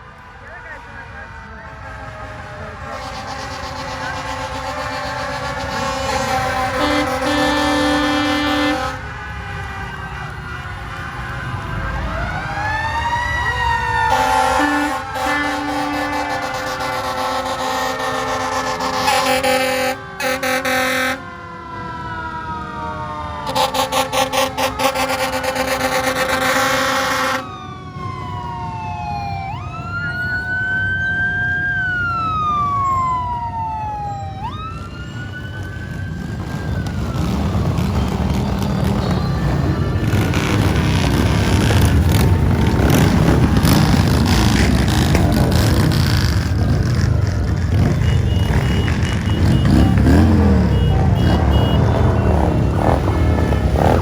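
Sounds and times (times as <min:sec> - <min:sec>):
siren wailing: 0:00.0 - 0:54.0
vehicle engines rumbling: 0:00.0 - 0:54.0
vehicle horn blast: 0:02.8 - 0:09.1, 0:14.1 - 0:21.3, 0:23.4 - 0:27.4, 0:47.7 - 0:54.0.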